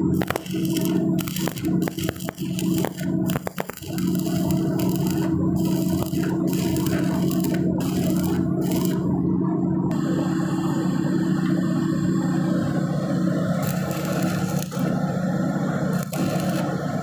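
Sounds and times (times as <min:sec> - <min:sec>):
welding arc crackling hiss: 0:00.0 - 0:09.1, 0:13.6 - 0:15.0, 0:15.9 - 0:16.8
welding machine hum: 0:00.0 - 0:17.0.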